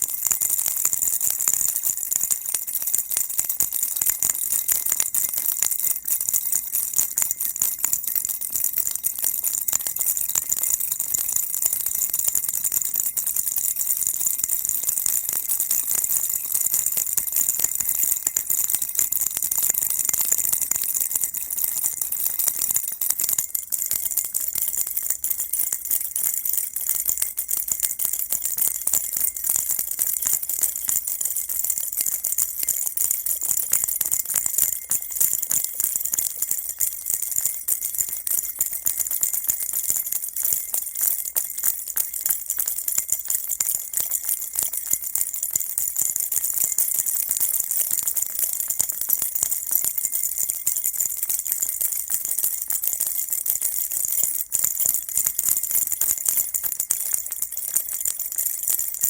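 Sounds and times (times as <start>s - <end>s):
baby rattle shaken: 0.0s - 0.4s, 7.8s - 44.8s.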